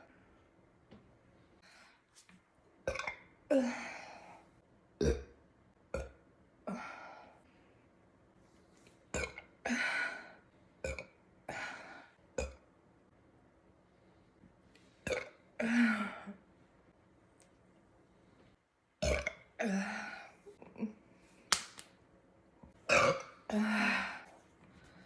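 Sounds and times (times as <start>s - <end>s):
woman burping: 5.0s - 5.4s, 22.9s - 24.2s.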